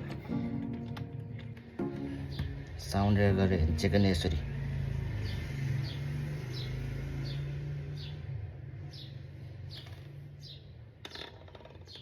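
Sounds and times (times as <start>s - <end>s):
small bird chirping: 8.9s - 12.0s.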